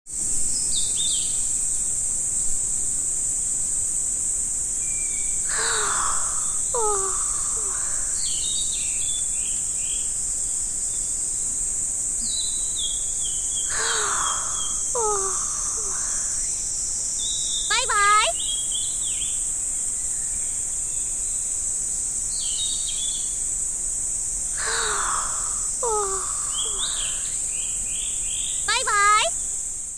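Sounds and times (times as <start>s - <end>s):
insects droning: 0.1s - 29.9s
falling bird calls: 5.1s - 9.2s, 12.2s - 16.6s, 17.7s - 18.5s, 24.6s - 29.3s
low gliding calls: 24.6s - 27.4s
bird chirps: 24.6s - 29.3s.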